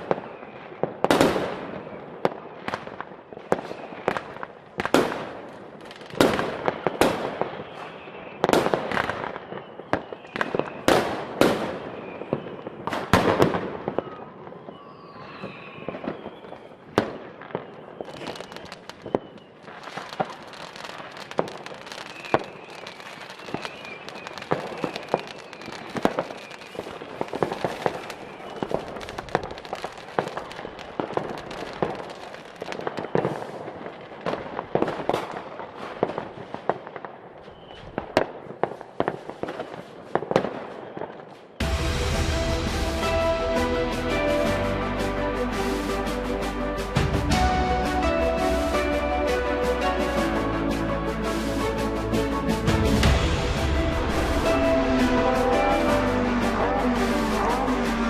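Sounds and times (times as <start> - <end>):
faint firework whistle: 0.0 - 0.9, 1.6 - 2.6, 3.4 - 4.3, 6.6 - 33.7, 37.4 - 38.2, 40.4 - 42.3
firecrackers popping and crackling: 0.0 - 58.0
fireworks bangs: 0.0 - 58.0.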